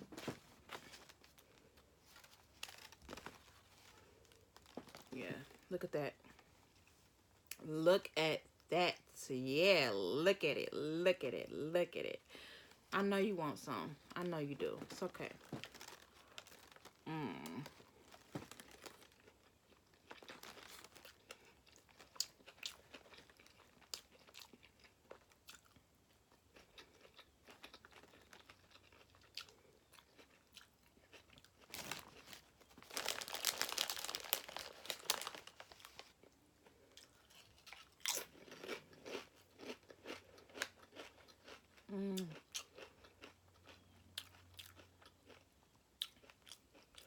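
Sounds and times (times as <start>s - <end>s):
crunching and rustling: 0.0s - 5.7s, 14.7s - 24.4s, 31.1s - 36.3s
chewing a sandwich: 0.8s - 5.0s, 17.6s - 47.0s.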